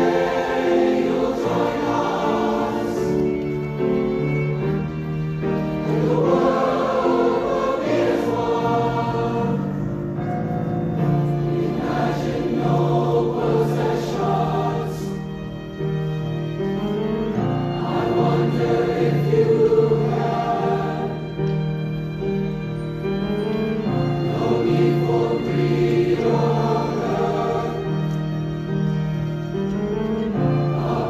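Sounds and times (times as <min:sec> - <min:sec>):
choir singing in harmony: 0:00.0 - 0:31.0.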